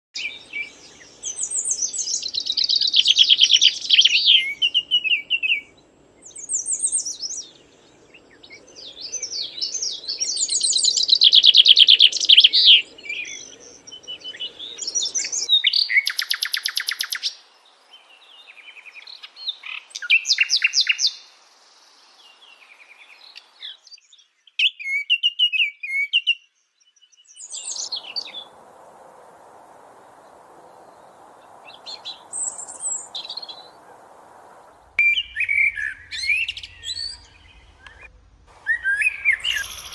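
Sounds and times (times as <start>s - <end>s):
songbird chirps and trills: 0.2s - 39.9s
faint low rumble: 27.6s - 39.9s.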